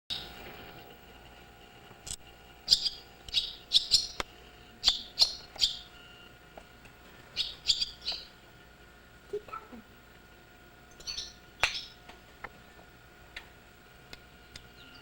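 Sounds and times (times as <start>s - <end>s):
swallows chirping: 2.6s - 6.3s, 7.3s - 8.5s, 10.9s - 12.0s, 14.5s - 15.0s.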